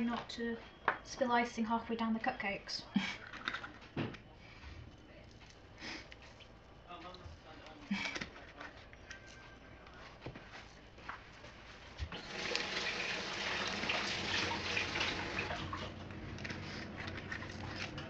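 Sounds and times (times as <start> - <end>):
tap water running into sink: 12.1 - 15.9.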